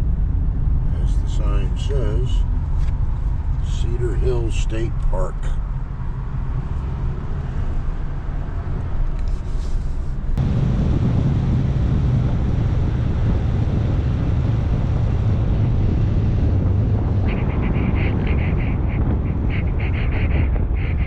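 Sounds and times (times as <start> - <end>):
vehicle road noise rumble: 0.0 - 21.0.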